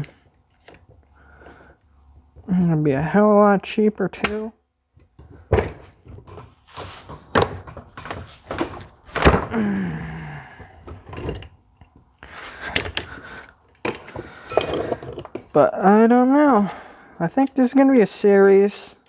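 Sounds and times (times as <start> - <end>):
metal parts and tools knocking: 5.0 - 9.5, 10.6 - 15.6.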